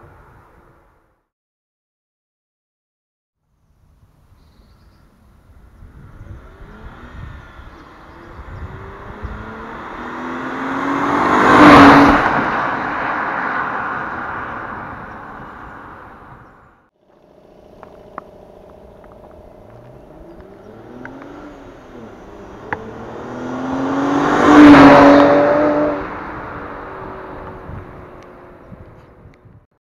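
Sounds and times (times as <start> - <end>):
engine revving: 5.8 - 14.9, 17.1 - 28.8
car accelerating past: 5.8 - 16.3, 17.2 - 29.0
car engine running: 14.8 - 24.2.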